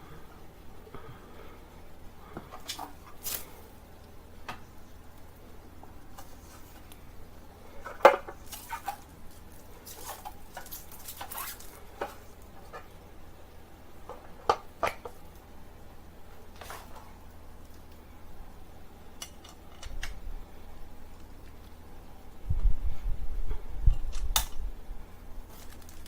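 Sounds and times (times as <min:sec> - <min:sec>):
packaging rustling: 0:07.8 - 0:12.5, 0:25.4 - 0:26.0.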